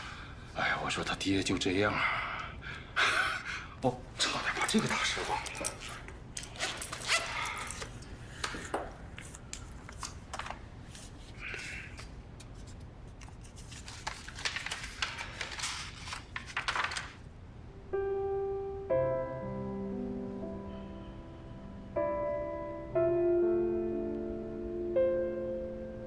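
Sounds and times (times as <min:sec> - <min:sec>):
rustling and handling noises: 0:04.2 - 0:17.3
soft piano music: 0:17.7 - 0:26.0.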